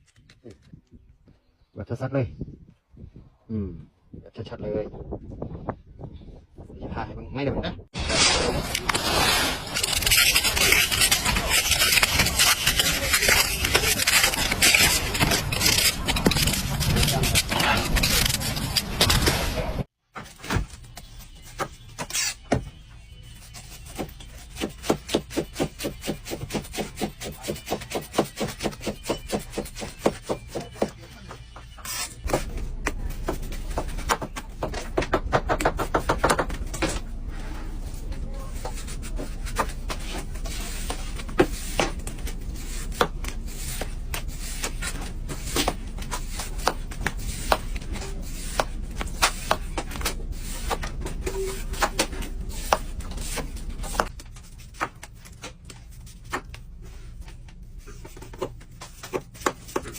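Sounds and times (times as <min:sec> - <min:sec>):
rubbing: 0:08.7 - 0:19.4.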